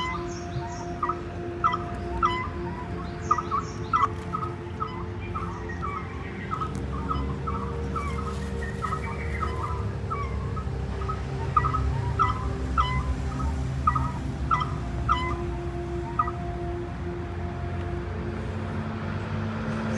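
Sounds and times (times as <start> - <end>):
birds chirping: 0.0 - 19.9.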